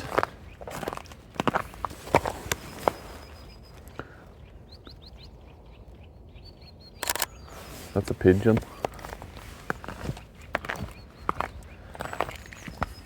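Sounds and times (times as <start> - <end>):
footsteps crunching on ground: 0.0 - 4.1, 7.4 - 13.0
songbird chirping: 0.0 - 13.0.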